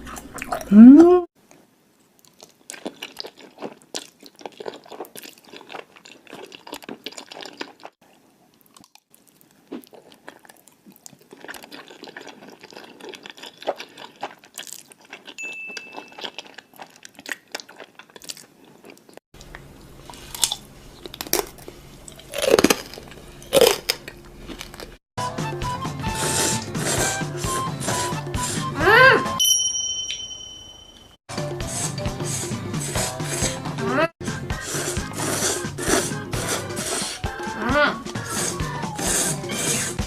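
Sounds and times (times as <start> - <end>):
chewing and crunching food: 1.4 - 25.0.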